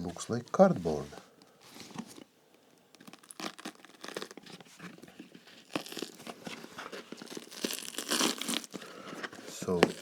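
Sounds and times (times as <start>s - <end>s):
shoe sole tearing and crunching: 3.0s - 4.5s, 5.6s - 8.8s.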